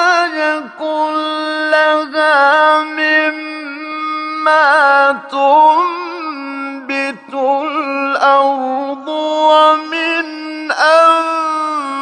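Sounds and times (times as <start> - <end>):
man chanting melodically: 0.0 - 12.0.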